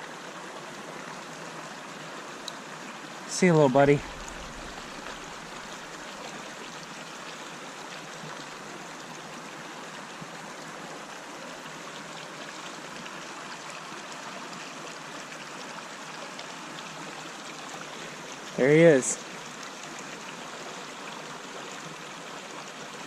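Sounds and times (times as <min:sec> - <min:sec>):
stream running over rocks: 0:00.0 - 0:23.0.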